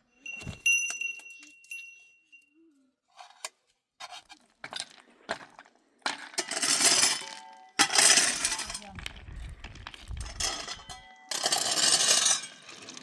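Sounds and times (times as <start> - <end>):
hard objects clinking: 0.2 - 2.6, 6.0 - 13.0.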